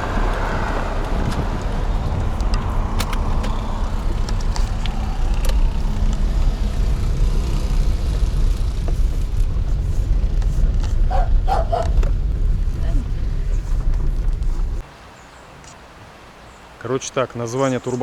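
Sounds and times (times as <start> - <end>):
car engine and road noise: 0.0 - 16.6.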